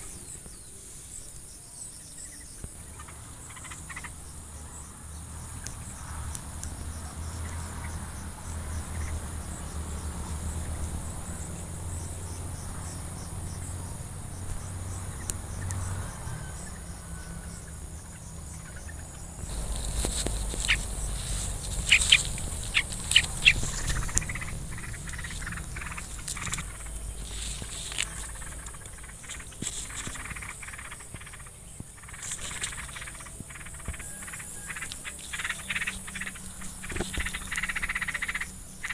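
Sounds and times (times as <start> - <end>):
crickets shrilling: 0.0 - 38.9
low rumble: 4.1 - 32.1
sharp loud chirps: 18.7 - 38.9.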